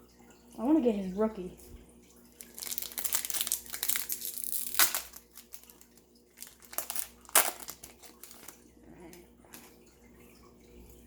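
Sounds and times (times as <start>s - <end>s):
foil wrapper crinkling and tearing: 2.3s - 8.6s.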